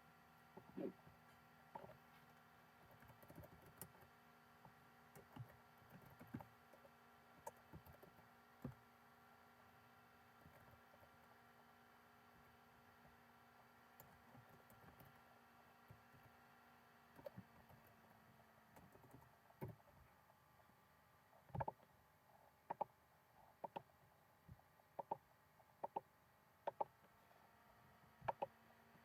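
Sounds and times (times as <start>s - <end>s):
faint steady hum: 0.0s - 29.0s
sharp clicks: 26.7s - 26.9s, 28.2s - 28.5s.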